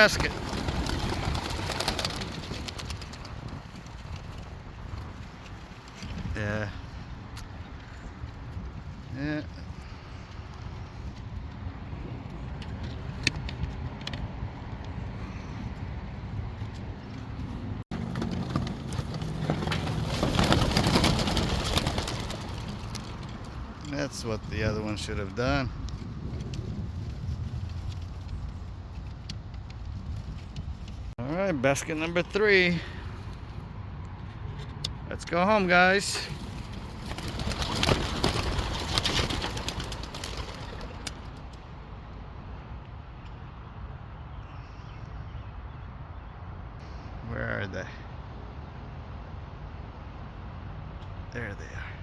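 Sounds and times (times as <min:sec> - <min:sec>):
pigeon wingbeats: 0:00.0 - 0:07.0, 0:16.7 - 0:31.0, 0:35.7 - 0:41.7.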